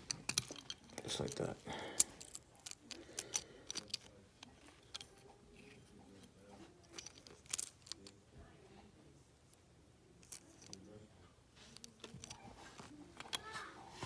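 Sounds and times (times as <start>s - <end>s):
toy car parts clicking: 0.1s - 5.8s, 6.8s - 8.2s, 13.2s - 13.6s.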